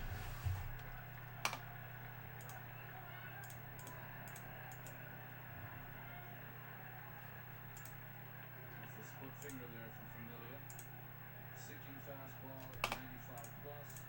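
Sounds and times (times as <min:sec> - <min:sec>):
steady low hum: 0:00.0 - 0:14.0
keyboard and mouse clicking: 0:02.4 - 0:02.6, 0:03.4 - 0:05.0, 0:07.7 - 0:08.0, 0:10.7 - 0:10.9, 0:12.6 - 0:14.0.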